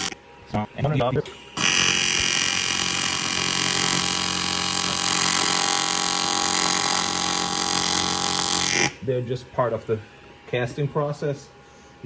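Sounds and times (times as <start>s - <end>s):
welding arc buzzing: 0.0s - 0.2s, 0.9s - 9.0s.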